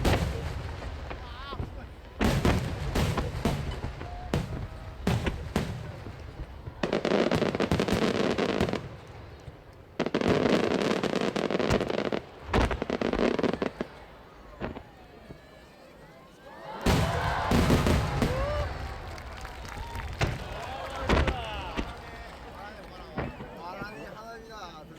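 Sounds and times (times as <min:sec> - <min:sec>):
firework shells bursting with bangs: 0:00.0 - 0:13.8
firework crackling: 0:00.0 - 0:13.9, 0:16.9 - 0:23.7.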